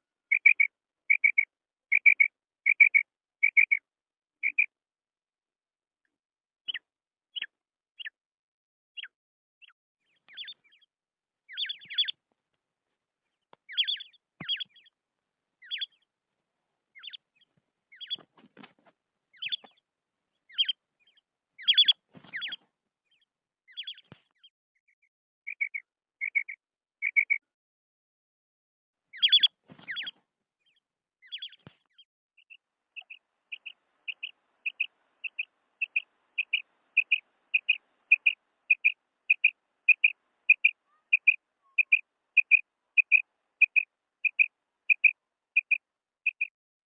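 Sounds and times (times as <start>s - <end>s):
quail calling: 0.3s - 3.8s, 11.5s - 12.2s, 13.7s - 14.9s, 15.6s - 16.0s, 17.0s - 19.8s, 20.5s - 20.8s, 21.6s - 22.6s, 29.2s - 30.2s, 33.0s - 46.5s.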